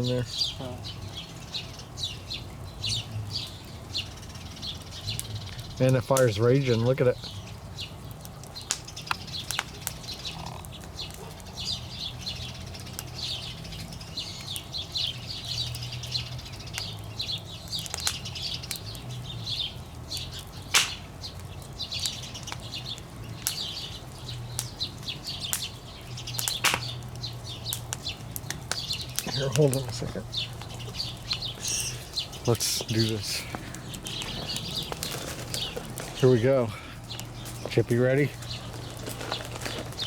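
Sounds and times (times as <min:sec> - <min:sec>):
campfire crackling and popping: 0:00.0 - 0:40.0
loud wood snaps: 0:08.1 - 0:11.4, 0:17.7 - 0:19.0, 0:20.1 - 0:23.9, 0:24.5 - 0:36.4, 0:37.0 - 0:40.0.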